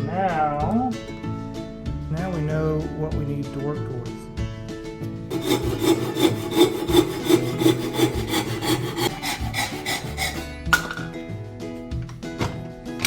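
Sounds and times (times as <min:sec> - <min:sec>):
hand saw cutting wood: 0:05.3 - 0:10.9.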